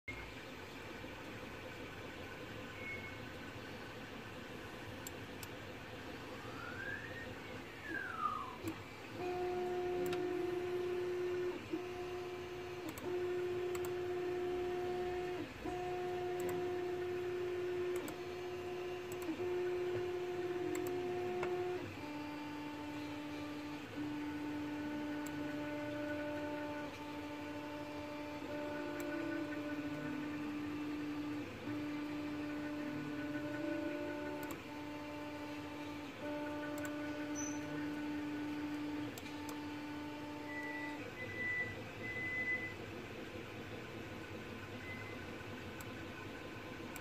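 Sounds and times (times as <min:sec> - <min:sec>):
stepper motors whining: 0:06.3 - 0:42.9.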